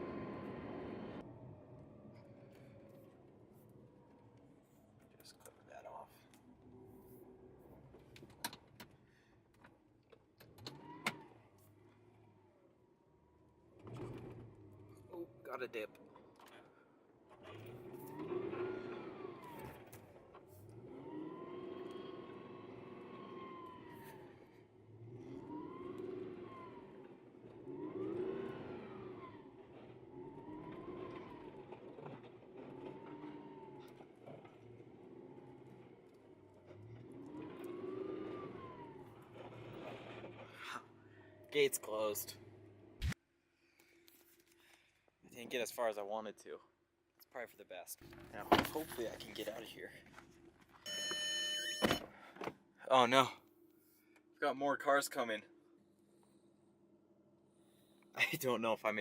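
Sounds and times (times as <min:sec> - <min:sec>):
car engine low hum: 0:00.0 - 0:43.2.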